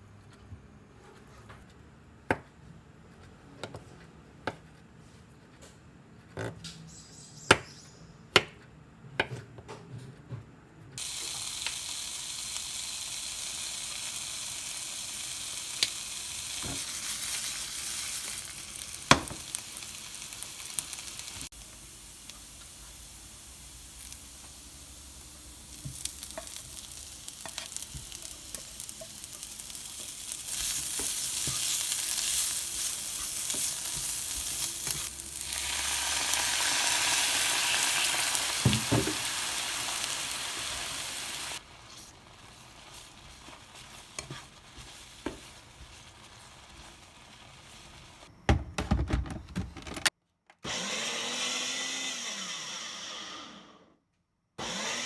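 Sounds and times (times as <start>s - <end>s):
food sizzling in frying pan: 11.0s - 48.3s.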